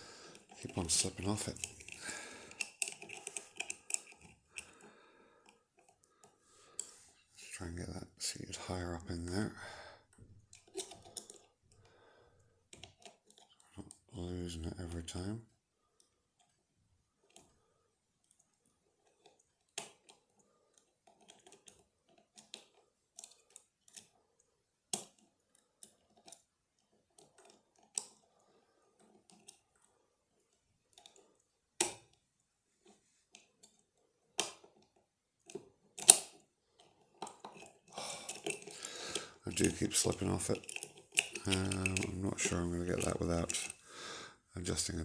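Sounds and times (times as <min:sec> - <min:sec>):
lock picks clicking and scraping: 0:00.3 - 0:07.0, 0:10.4 - 0:11.9, 0:12.7 - 0:13.7, 0:18.2 - 0:24.2, 0:24.9 - 0:28.4, 0:29.0 - 0:29.8, 0:30.4 - 0:32.2, 0:33.3 - 0:43.8
sharp clicks of tool slipping: 0:37.5 - 0:42.4.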